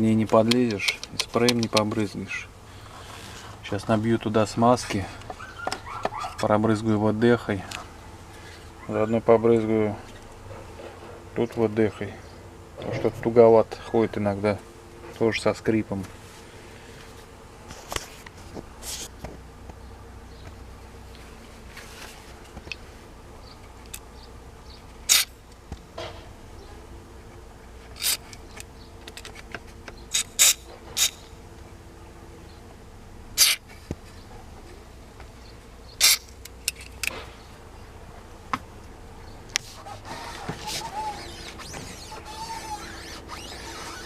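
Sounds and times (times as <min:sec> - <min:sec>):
steady low hum: 0:00.0 - 0:44.0
handling clicks and knocks: 0:00.1 - 0:02.0, 0:27.3 - 0:31.0.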